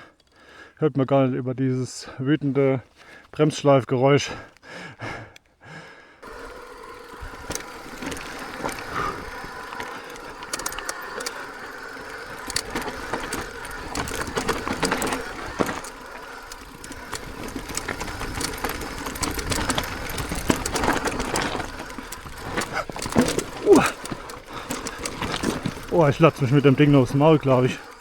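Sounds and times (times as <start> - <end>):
bike rattling over rocks: 6.2 - 28.0
bike brakes grinding squeal: 6.3 - 28.0.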